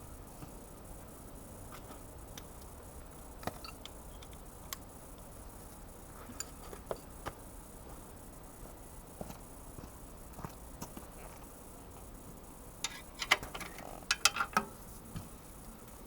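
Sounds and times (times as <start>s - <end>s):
wrenches clicking on metal: 12.8s - 14.7s.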